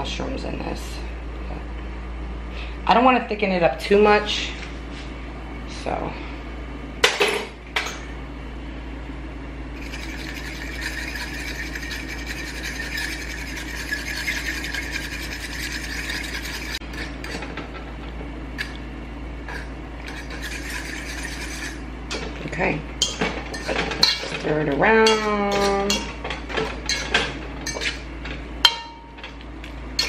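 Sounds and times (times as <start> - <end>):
steady low hum: 0.0 - 30.0
stirring and scraping in a pan: 9.8 - 17.6, 19.5 - 21.8, 23.0 - 24.3, 25.1 - 28.0.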